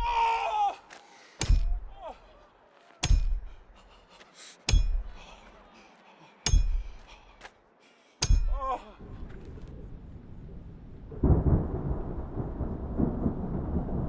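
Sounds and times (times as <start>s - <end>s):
person crying out in pain: 0.0s - 1.0s, 8.3s - 9.0s.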